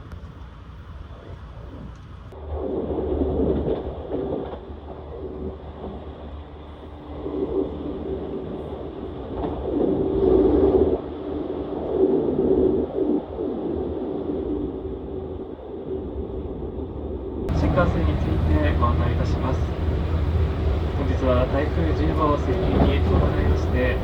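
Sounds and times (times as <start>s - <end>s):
electric train running: 17.5s - 24.0s.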